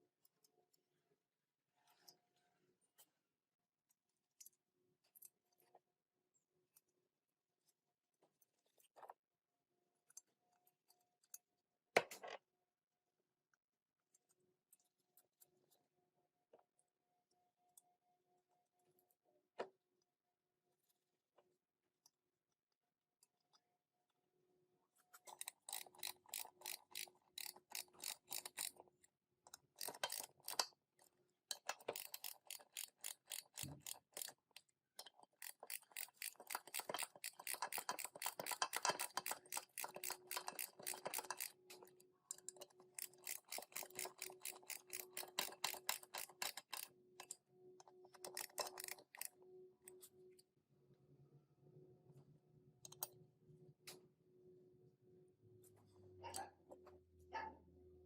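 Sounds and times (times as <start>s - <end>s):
rapid metallic clicking: 35.0s - 47.3s, 48.2s - 49.3s.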